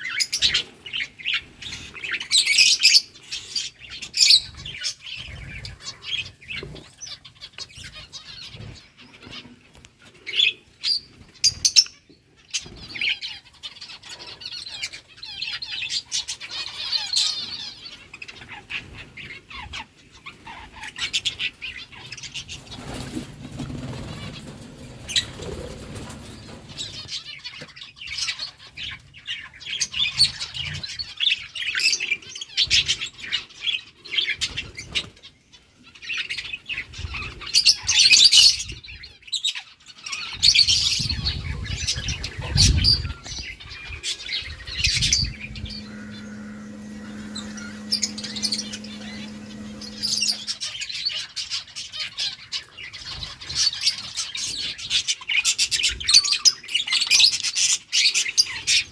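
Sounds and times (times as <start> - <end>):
budgerigars chirping and chattering: 0.0 - 9.6, 22.5 - 27.2, 44.8 - 50.6.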